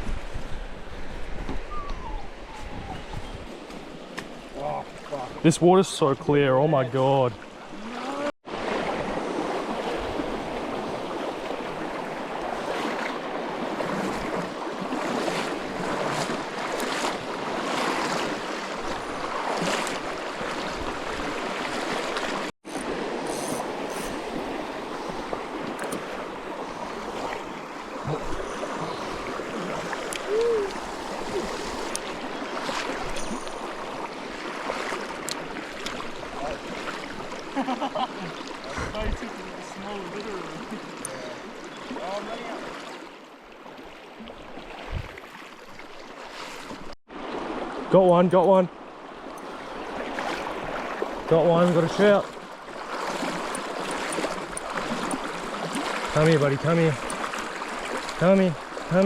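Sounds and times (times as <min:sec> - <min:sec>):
river water rushing: 0:07.4 - 0:37.6, 0:48.7 - 0:59.0.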